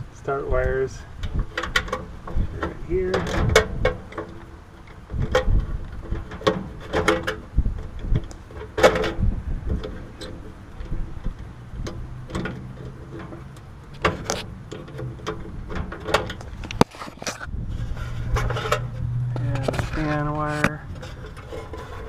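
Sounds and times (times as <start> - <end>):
low steady rumble: 0.0 - 22.0.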